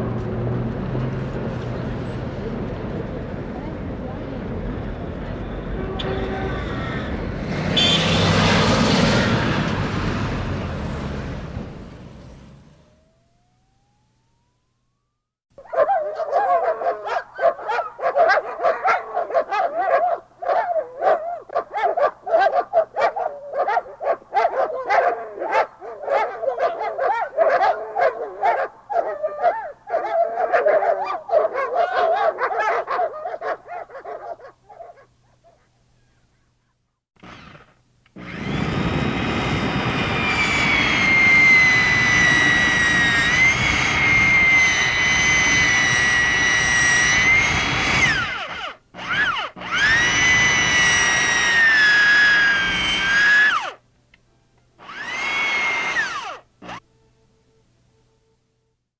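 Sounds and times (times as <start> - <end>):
dogs barking and yipping: 15.6 - 36.0.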